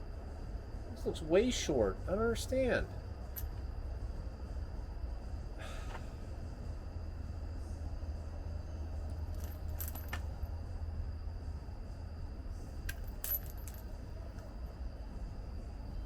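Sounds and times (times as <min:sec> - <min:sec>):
steady low rumble: 0:00.0 - 0:16.0
small metal pieces clinking: 0:09.3 - 0:10.3, 0:12.8 - 0:13.9.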